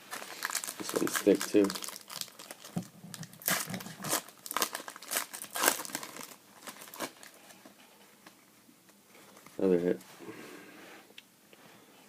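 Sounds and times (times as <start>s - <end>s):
plastic wrapper crinkling and tearing: 0.0s - 7.4s.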